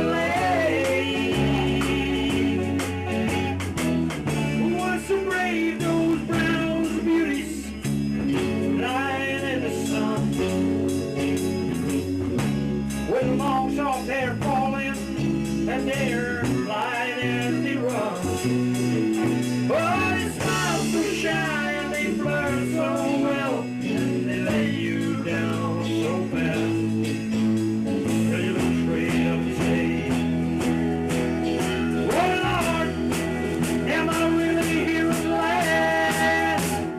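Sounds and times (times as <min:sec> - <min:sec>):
person singing: 0:00.0 - 0:10.8, 0:13.1 - 0:27.2, 0:28.0 - 0:36.9
bass line: 0:00.0 - 0:36.9
drums with cymbals: 0:00.0 - 0:36.9
guitar: 0:00.0 - 0:36.9.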